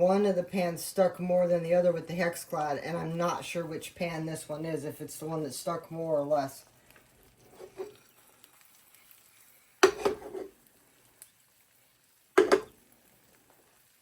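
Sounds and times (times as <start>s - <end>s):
faint frying: 0.0s - 14.0s
knocks against frying pan: 9.8s - 10.2s, 12.4s - 12.7s.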